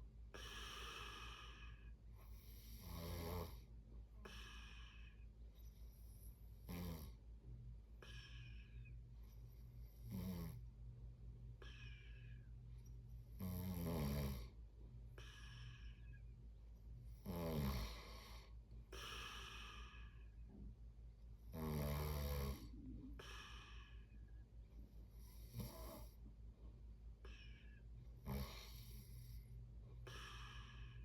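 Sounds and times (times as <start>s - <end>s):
steady low hum: 0.0s - 31.0s
loud snores: 2.4s - 3.7s, 6.6s - 7.2s, 9.9s - 10.6s, 13.4s - 14.6s, 17.2s - 18.4s, 21.5s - 23.8s, 25.2s - 26.1s, 28.2s - 29.3s.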